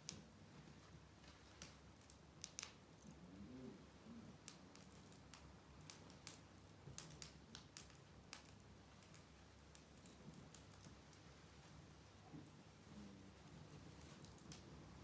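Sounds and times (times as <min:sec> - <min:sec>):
wood fire crackling and popping: 0:00.0 - 0:03.2, 0:04.2 - 0:12.6, 0:13.2 - 0:15.0
faint low hum: 0:08.2 - 0:15.0.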